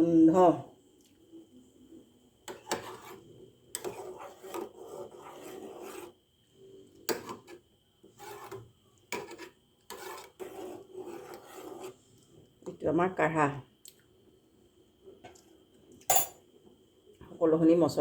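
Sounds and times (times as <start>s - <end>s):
scraping in a saucepan: 2.5s - 12.4s.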